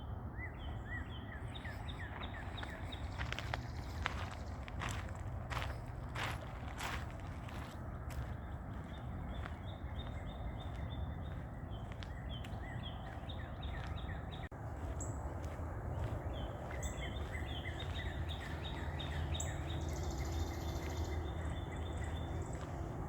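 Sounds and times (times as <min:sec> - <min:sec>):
bird chirping: 0:00.4 - 0:05.8, 0:07.5 - 0:23.0.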